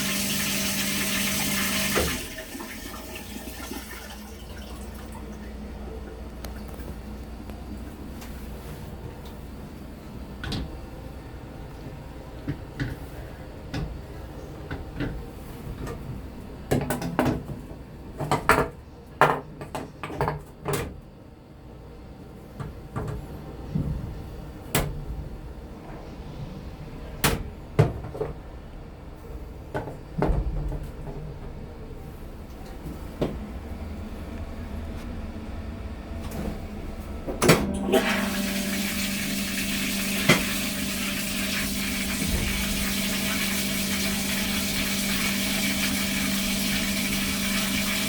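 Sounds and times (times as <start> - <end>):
steady low hum: 21.3 - 46.3.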